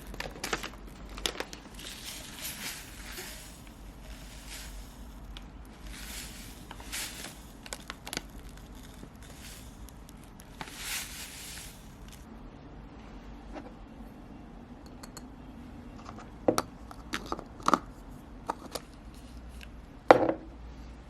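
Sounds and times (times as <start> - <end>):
rustling of things handled: 0.0 - 12.3.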